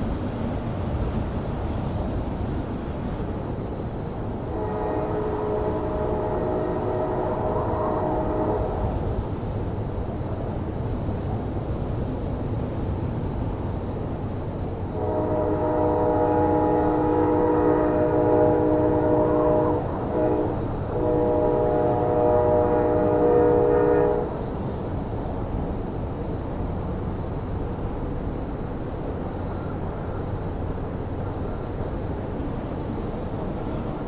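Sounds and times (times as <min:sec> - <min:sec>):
locomotive air horn blasts: 0:04.5 - 0:09.0, 0:15.0 - 0:24.4.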